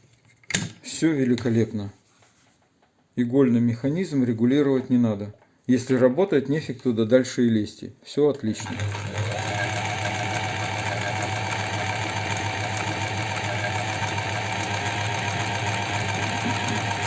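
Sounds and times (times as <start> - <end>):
sewing machine running: 8.5 - 17.0.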